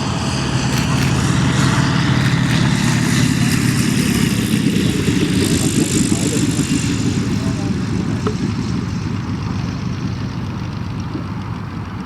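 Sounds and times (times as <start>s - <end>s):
aircraft radial engine and propeller: 0.0s - 12.0s.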